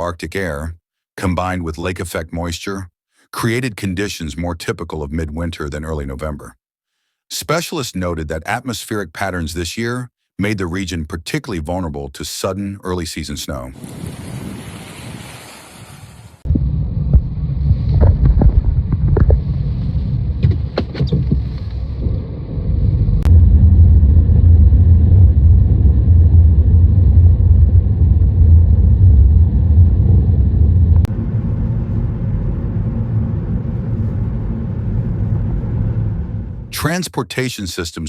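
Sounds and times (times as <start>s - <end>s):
low rumble: 16.4s - 37.0s.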